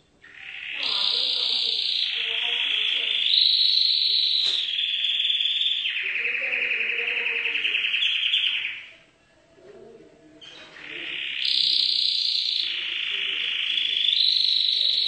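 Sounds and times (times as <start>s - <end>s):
canary singing trills: 0.0s - 9.1s, 10.2s - 15.0s.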